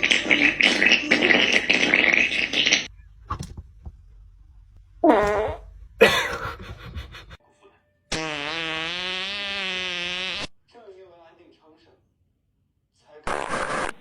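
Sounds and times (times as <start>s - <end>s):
fart sound effects: 0.0s - 3.4s, 5.0s - 5.8s, 8.1s - 10.5s, 13.3s - 14.0s.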